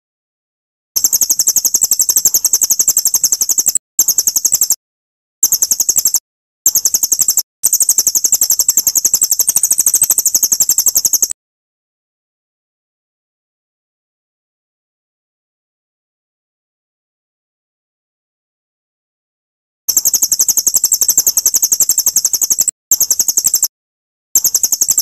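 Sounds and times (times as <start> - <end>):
high-pitched songbird trill: 1.0 - 4.8, 5.4 - 11.4, 19.9 - 23.7, 24.4 - 25.0.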